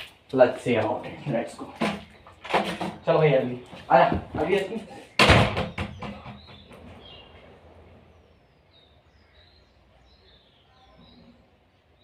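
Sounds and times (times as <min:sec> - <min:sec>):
small bird chirping: 0:05.0 - 0:12.0.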